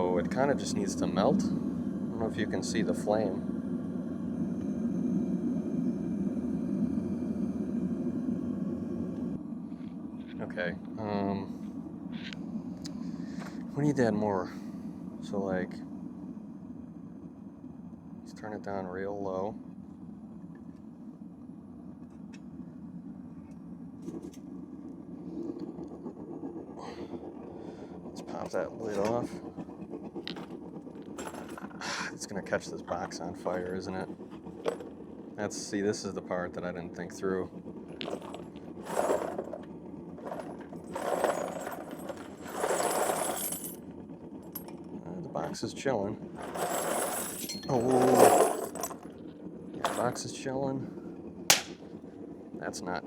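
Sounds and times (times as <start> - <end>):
propane burner rumbling: 0.0 - 53.0
metal casings clattering: 31.2 - 31.8, 37.9 - 43.8, 46.4 - 49.1, 49.8 - 50.2, 51.5 - 51.8.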